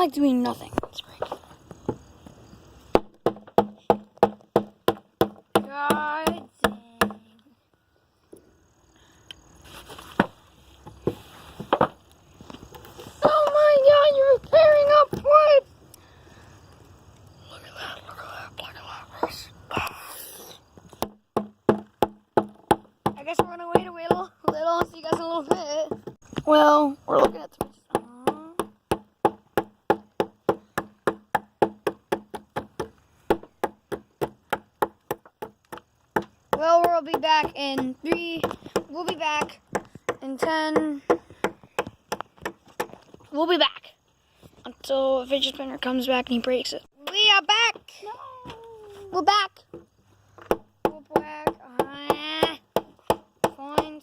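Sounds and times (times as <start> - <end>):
wood chipping: 0.7 - 7.2, 20.7 - 26.5, 27.1 - 43.3, 49.7 - 54.0
hammer knocking on wooden plank: 2.9 - 7.2, 21.0 - 26.2, 27.2 - 43.0, 49.7 - 53.9
fidget spinner beaten on wood: 27.2 - 43.0.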